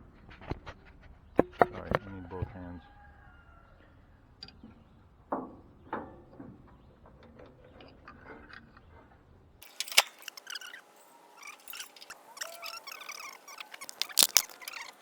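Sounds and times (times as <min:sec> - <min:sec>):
thin high clicks and scrapes: 0:12.4 - 0:15.0
hand tools clicking: 0:13.8 - 0:14.7.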